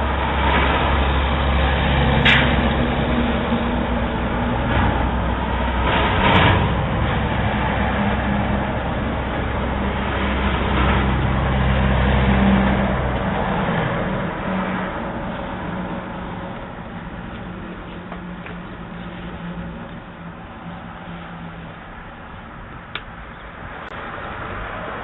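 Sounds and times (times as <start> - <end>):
vehicle engine running: 0.0 - 25.0.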